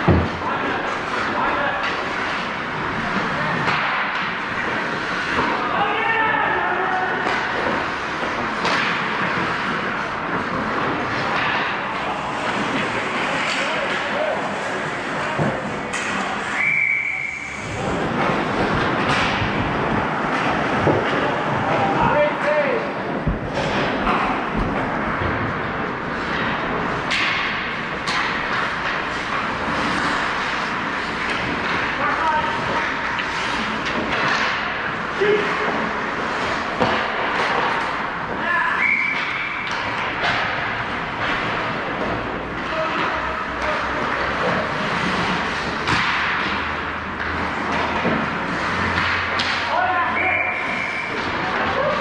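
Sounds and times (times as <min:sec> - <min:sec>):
skates scraping on ice: 0:00.0 - 0:52.0
sharp hits of sticks or puck: 0:07.1 - 0:09.8, 0:15.2 - 0:19.6, 0:26.2 - 0:51.4.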